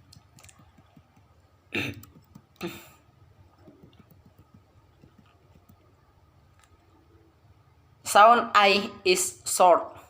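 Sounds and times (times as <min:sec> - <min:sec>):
man coughing: 0:01.8 - 0:02.9.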